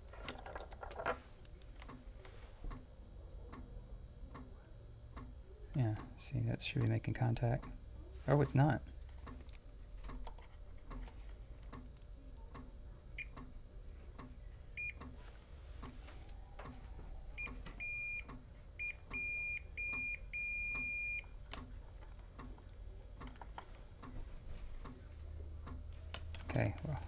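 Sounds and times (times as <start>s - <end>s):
multimeter continuity beeps: 14.8s - 15.1s, 17.4s - 21.3s.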